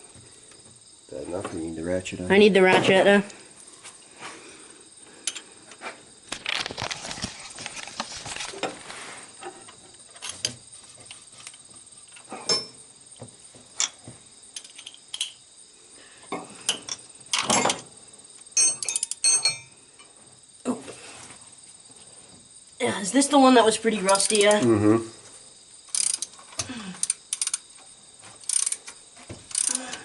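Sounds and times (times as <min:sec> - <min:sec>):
metal hand tools clinking and scraping: 0:18.6 - 0:19.7
ratchet clicks: 0:24.1 - 0:24.5, 0:25.9 - 0:26.4, 0:27.0 - 0:27.7, 0:28.4 - 0:28.9, 0:29.5 - 0:30.0.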